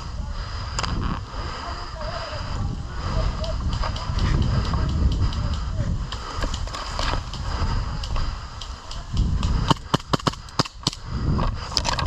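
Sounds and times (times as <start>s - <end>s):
rustling of movement: 0.0s - 12.0s
airsoft gun cracks: 4.8s - 11.1s.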